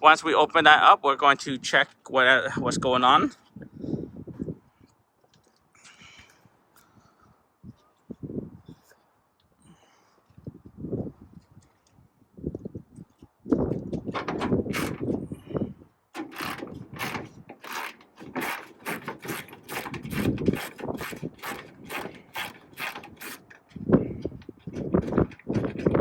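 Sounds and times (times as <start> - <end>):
ratchet tool clicking: 14.7 - 15.0, 16.2 - 23.8.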